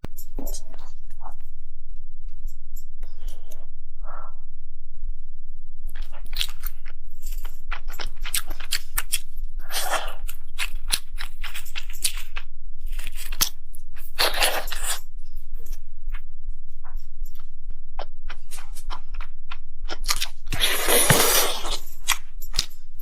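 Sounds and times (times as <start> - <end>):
steady low hum: 0.0 - 23.0
crisp chewing crunches: 6.0 - 15.0, 18.0 - 22.7.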